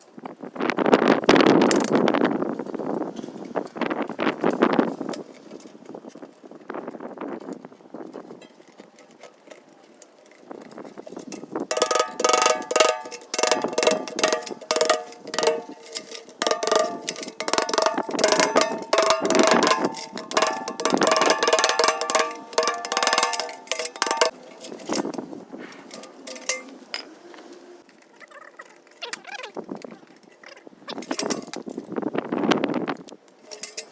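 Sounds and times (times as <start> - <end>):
handling noises: 3.0 - 32.0, 33.2 - 33.9
metal pail clanking: 10.2 - 27.1, 31.0 - 31.7, 33.4 - 33.9.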